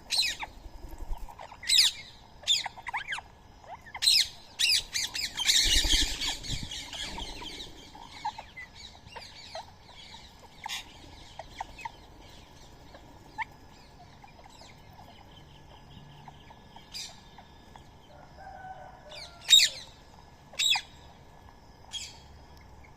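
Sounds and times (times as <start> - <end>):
birds chirping and squawking: 0.0 - 21.2, 21.9 - 22.9
wing flapping: 0.1 - 1.5, 5.0 - 7.8.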